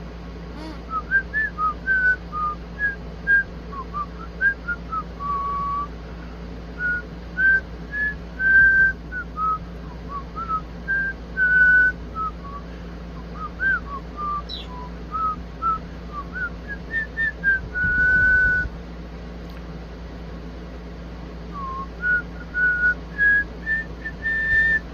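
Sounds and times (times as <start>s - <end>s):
whistled tune: 1.0s - 5.9s, 6.8s - 12.6s, 13.4s - 18.7s, 21.5s - 24.8s.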